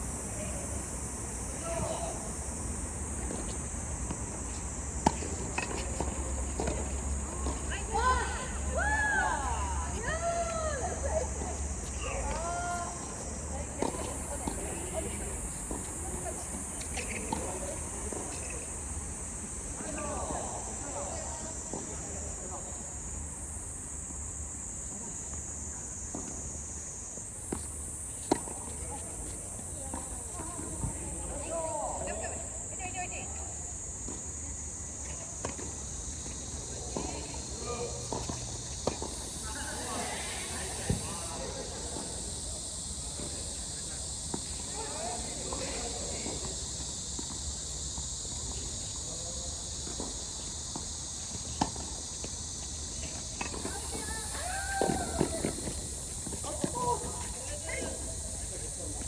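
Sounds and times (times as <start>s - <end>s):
insect chorus: 0.0s - 59.0s
steady high hiss: 0.0s - 59.0s
tennis ball impacts: 3.1s - 8.4s, 53.0s - 57.3s.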